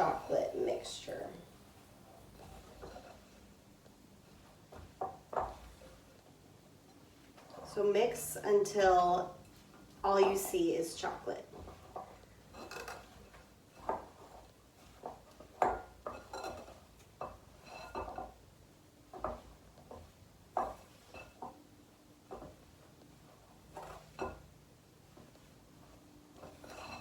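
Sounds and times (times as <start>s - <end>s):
spoon scraping a mixing bowl: 2.2s - 6.1s, 11.1s - 18.4s, 19.1s - 21.6s, 25.2s - 27.0s.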